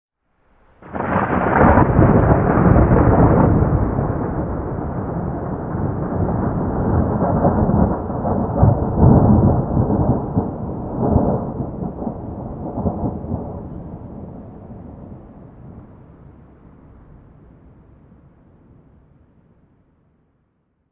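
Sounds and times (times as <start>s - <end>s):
thunder clap and rumble: 0.7s - 16.5s.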